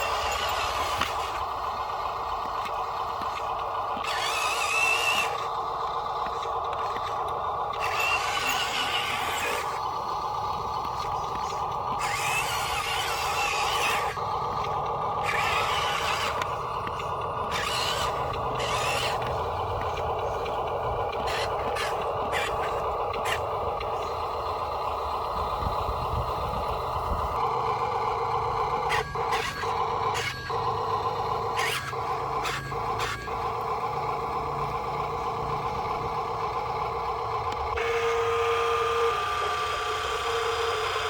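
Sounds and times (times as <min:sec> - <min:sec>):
high-pitched squealing and scraping: 0:00.0 - 0:24.5, 0:27.4 - 0:33.6
electric motors whining: 0:00.0 - 0:41.0.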